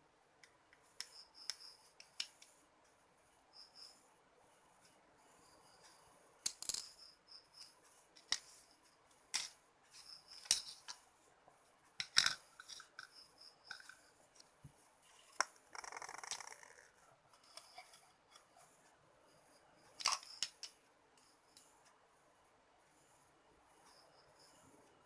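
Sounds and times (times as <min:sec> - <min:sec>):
small tools clicking and snipping: 0:06.4 - 0:07.0, 0:09.4 - 0:11.0, 0:20.0 - 0:20.8.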